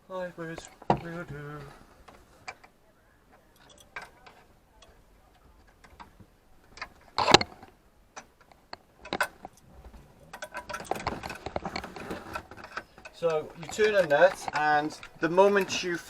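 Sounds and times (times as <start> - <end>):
spanner clicking and knocking: 3.5 - 9.7, 10.3 - 15.8.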